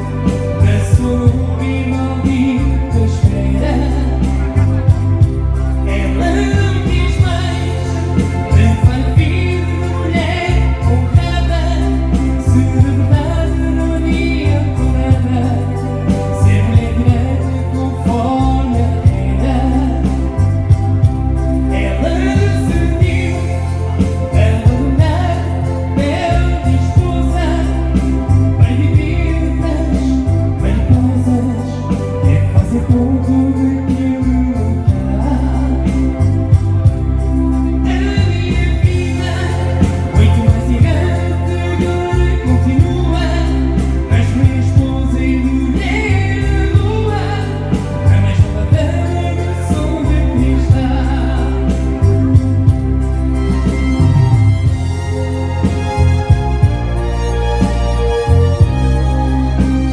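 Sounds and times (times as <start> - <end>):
person singing: 0.0 - 56.7
regular beat: 0.0 - 59.9
steady bass: 0.0 - 59.9.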